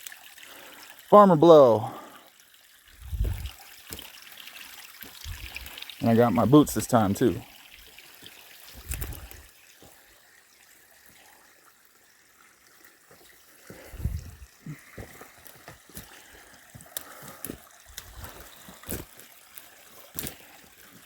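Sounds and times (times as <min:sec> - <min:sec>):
water trickling: 0:00.0 - 0:21.0
low thumps: 0:03.0 - 0:03.5.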